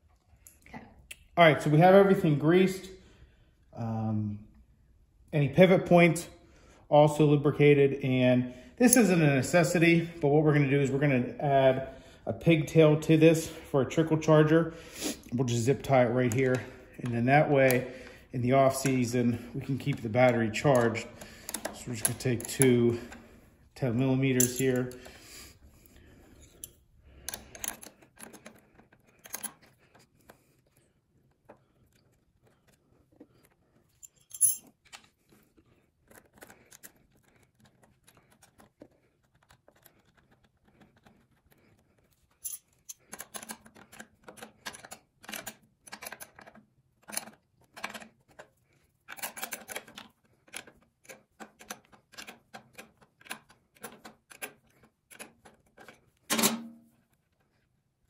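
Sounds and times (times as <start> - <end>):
metal tools clinking: 24.3 - 25.0, 33.9 - 34.9, 42.4 - 43.5, 56.3 - 56.8.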